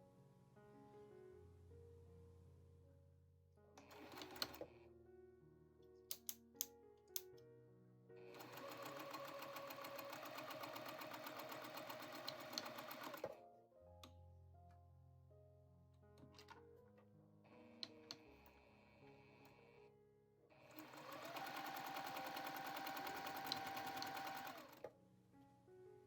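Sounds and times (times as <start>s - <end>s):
sewing machine stitching: 3.8s - 4.7s, 8.3s - 13.4s, 20.6s - 24.9s
sharp clicks: 6.1s - 6.4s.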